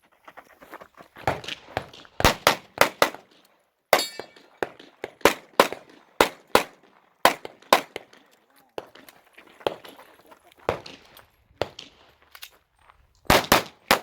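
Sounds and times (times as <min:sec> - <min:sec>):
pistol shots: 0:01.3 - 0:10.0, 0:10.7 - 0:12.2, 0:13.3 - 0:14.0.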